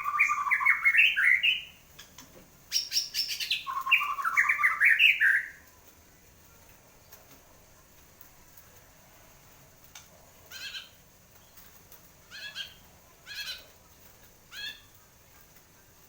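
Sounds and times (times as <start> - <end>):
bird calling rising notes: 0.0 - 1.7, 2.8 - 5.6.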